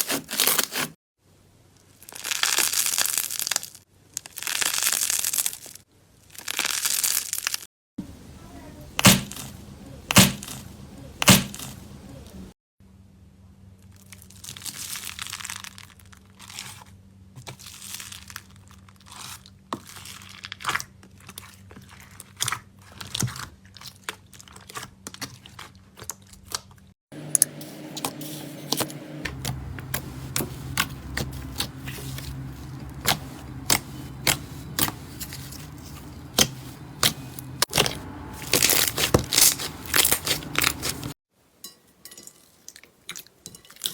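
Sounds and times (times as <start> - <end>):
slime crackling and popping: 2.0 - 7.6, 36.4 - 41.0.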